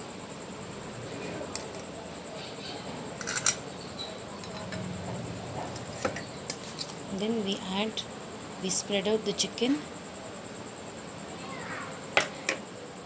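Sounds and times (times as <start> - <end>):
utensils clicking against dishes: 3.2 - 3.7.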